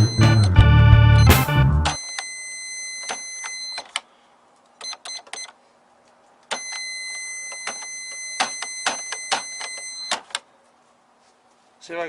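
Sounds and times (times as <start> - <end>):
cash register beeping: 0.0 - 0.6, 1.2 - 4.0, 4.8 - 5.6, 6.5 - 10.4.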